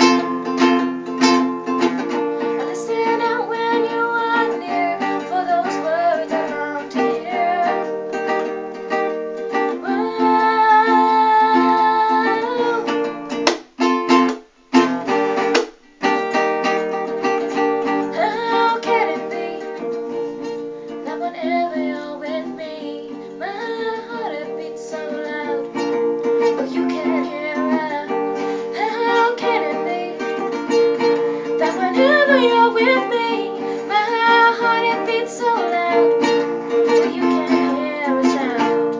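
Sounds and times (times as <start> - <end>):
plucked ukulele: 0.0 - 38.9
woman singing: 2.0 - 13.3, 17.6 - 38.9.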